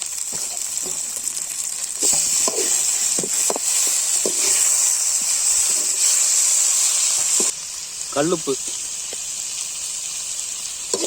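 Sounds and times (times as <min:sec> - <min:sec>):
tomatoes sizzling in hot oil: 0:00.0 - 0:11.0.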